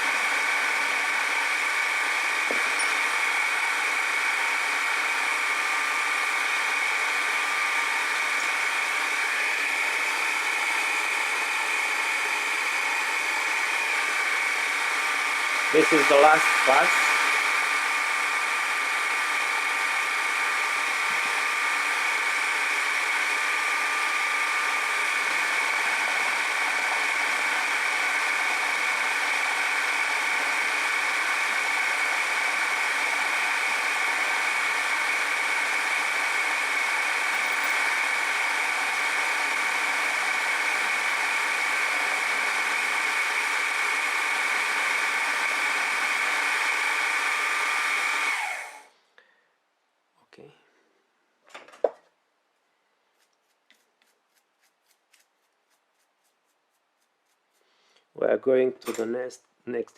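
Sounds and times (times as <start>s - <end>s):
metal shaper machine humming: 0.0s - 40.9s.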